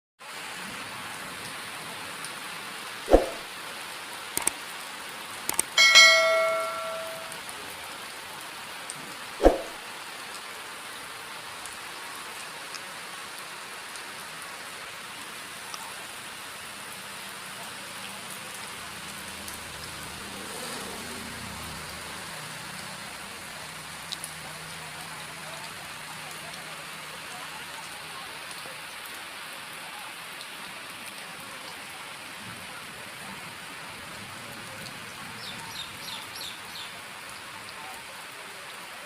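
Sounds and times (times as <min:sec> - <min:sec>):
rain falling on plants: 0:00.2 - 0:39.0
sharp clicks: 0:04.4 - 0:04.6, 0:05.5 - 0:05.8
short metallic ring: 0:05.8 - 0:07.4.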